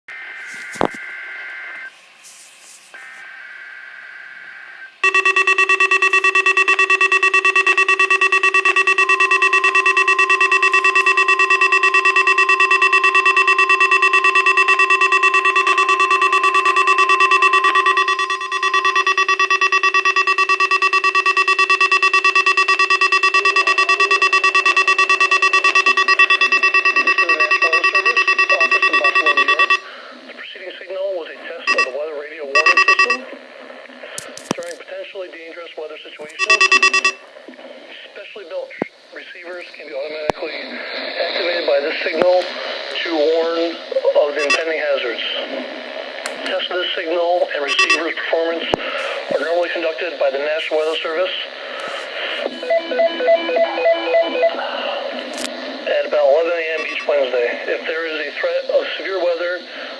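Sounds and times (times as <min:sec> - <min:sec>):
thin steady warning tone: 0:03.0 - 0:30.0, 0:31.6 - 0:33.3, 0:36.3 - 0:37.2, 0:44.2 - 0:44.9, 0:47.5 - 0:51.4, 0:56.5 - 0:58.4
loud buzzy alarm tone: 0:03.6 - 0:29.9, 0:31.7 - 0:32.0, 0:32.6 - 0:33.2, 0:36.4 - 0:37.2, 0:44.4 - 0:44.8, 0:47.6 - 0:48.1, 0:56.8 - 0:57.1
warbling digital data bursts: 0:05.0 - 0:29.8, 0:32.6 - 0:33.2, 0:44.4 - 0:44.7, 0:56.8 - 0:57.2.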